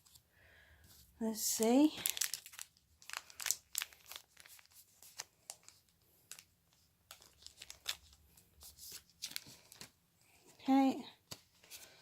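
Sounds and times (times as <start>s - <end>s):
foil wrapper crinkling and tearing: 1.8s - 6.5s, 7.1s - 9.9s.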